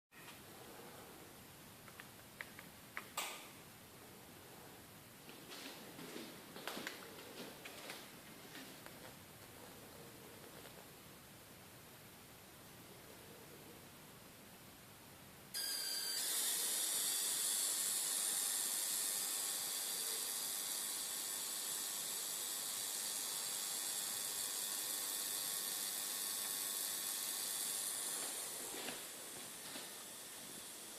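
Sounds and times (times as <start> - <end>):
tv high-pitched hiss and whine: 15.6 - 30.9.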